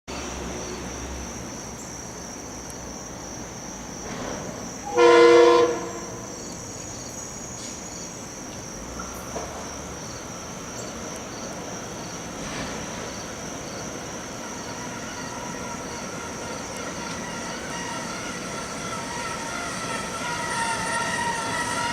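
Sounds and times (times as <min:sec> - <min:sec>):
train horn blast: 0:04.8 - 0:06.5, 0:14.3 - 0:21.9.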